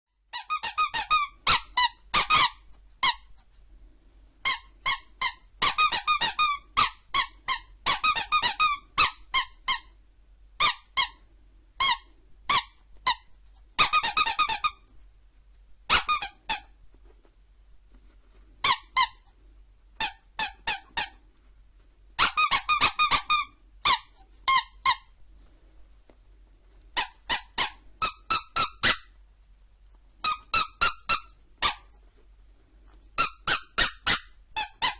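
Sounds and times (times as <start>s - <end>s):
dog squeaky toy squeaking: 0.3s - 3.4s, 4.4s - 9.9s, 10.6s - 11.2s, 11.8s - 14.8s, 15.9s - 16.8s, 18.6s - 19.3s, 20.0s - 21.2s, 22.2s - 25.1s, 27.0s - 29.1s, 30.2s - 32.0s, 33.1s - 34.9s.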